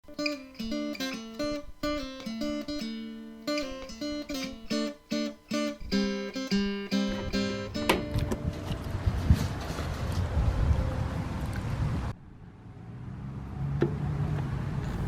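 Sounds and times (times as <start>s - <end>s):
acoustic guitar picking: 0.0s - 10.0s.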